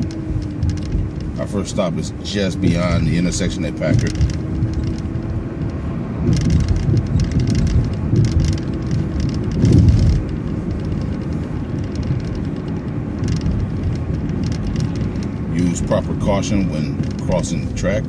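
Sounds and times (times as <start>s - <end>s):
bus engine and road noise: 0.0s - 18.0s
rattling inside bus: 0.0s - 18.0s
heavy low thump: 6.1s - 11.0s.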